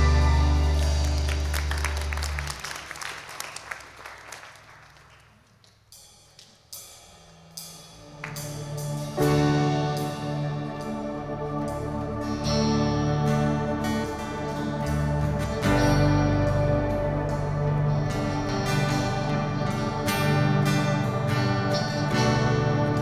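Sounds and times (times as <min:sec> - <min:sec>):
worship band instrumental music: 0:00.0 - 0:03.3, 0:08.0 - 0:23.0.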